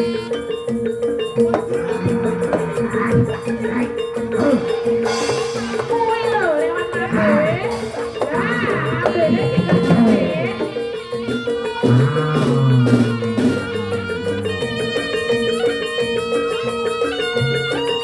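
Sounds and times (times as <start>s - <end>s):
drums: 1.6s - 14.0s.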